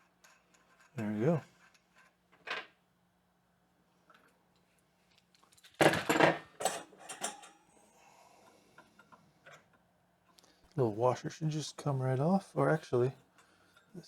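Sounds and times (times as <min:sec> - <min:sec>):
metal tools clinking: 0:06.6 - 0:07.6.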